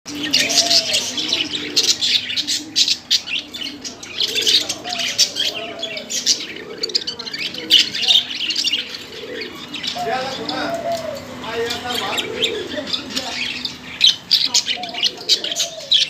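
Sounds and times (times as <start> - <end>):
budgerigars chattering: 0.1 - 16.0.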